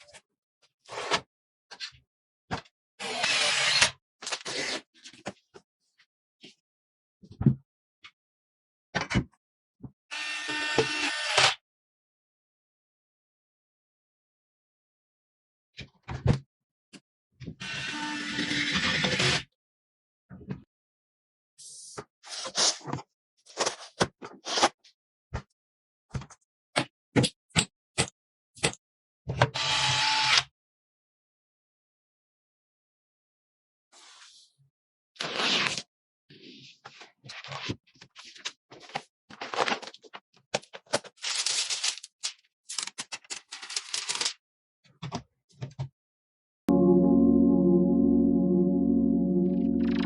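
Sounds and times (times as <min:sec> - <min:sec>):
music: 0:46.7 - 0:50.0.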